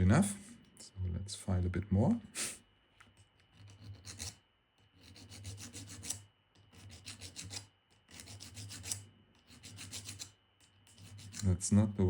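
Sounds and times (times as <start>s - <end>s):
file rasping on metal: 3.5s - 11.6s.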